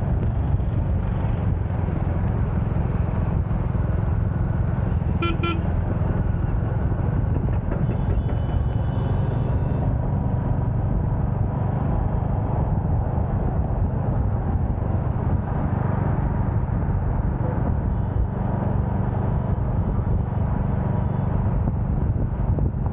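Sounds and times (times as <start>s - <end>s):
motorcycle engine running: 0.0s - 11.3s.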